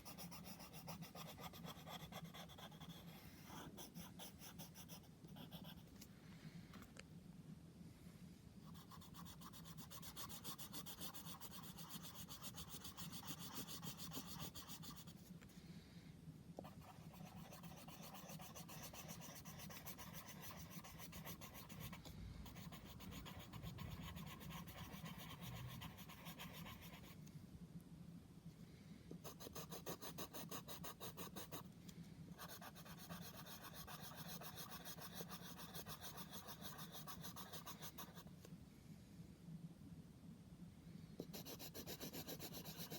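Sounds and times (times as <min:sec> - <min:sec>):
drawing tool rubbing on paper: 0:08.7 - 0:15.2, 0:16.7 - 0:27.2, 0:32.4 - 0:38.2.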